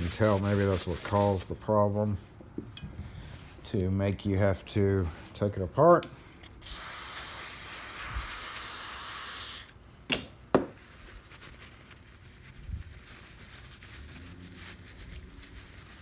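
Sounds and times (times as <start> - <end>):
aerosol spray can hissing: 6.6 - 9.7.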